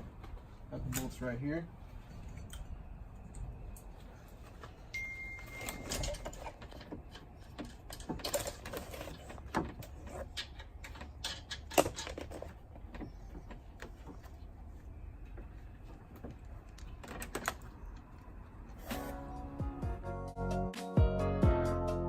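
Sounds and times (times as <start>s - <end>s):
metal tools and bolts clinking: 4.9s - 12.6s.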